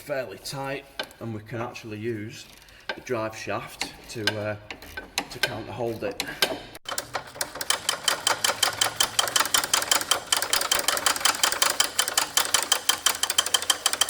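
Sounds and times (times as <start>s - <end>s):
ratchet clicking: 6.4s - 14.0s.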